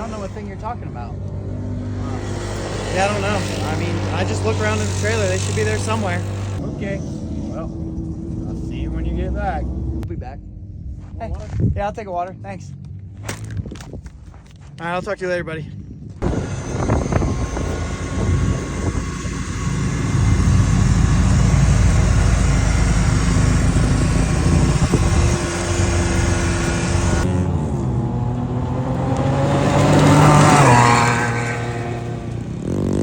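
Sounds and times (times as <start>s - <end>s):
broad rushing noise: 0.0s - 6.6s, 16.2s - 27.3s, 28.4s - 33.0s
utv engine running: 0.0s - 33.0s.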